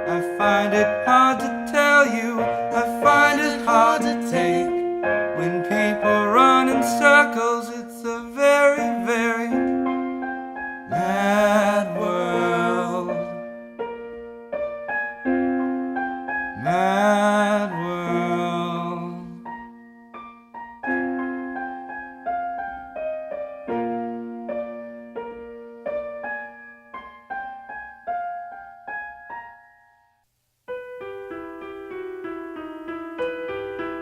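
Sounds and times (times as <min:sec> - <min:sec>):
person singing: 0:00.0 - 0:09.8, 0:10.9 - 0:13.5, 0:16.6 - 0:19.5
slow piano: 0:00.0 - 0:34.0.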